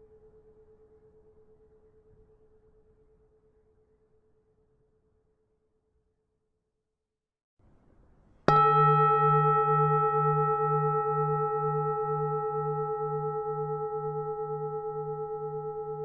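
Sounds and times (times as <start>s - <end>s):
temple bell ringing: 8.5s - 16.0s.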